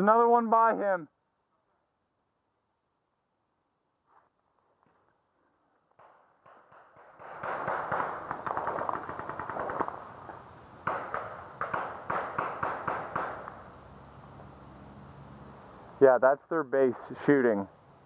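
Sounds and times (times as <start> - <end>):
paintball markers firing: 6.0 - 10.0, 10.8 - 13.6.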